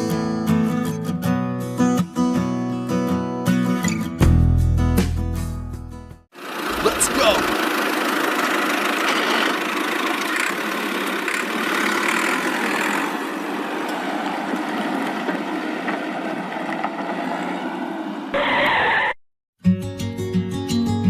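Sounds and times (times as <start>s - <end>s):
vehicle driving: 6.4s - 19.2s.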